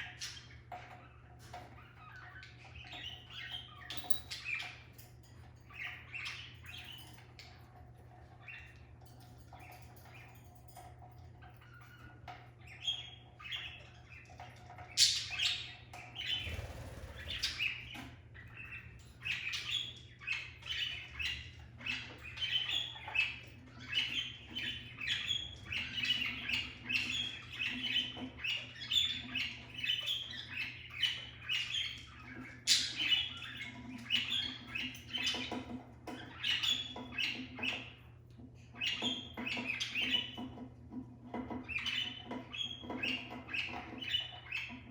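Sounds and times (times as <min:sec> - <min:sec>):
budgerigars chirping: 0:11.4 - 0:38.0, 0:38.7 - 0:40.7, 0:41.3 - 0:44.9.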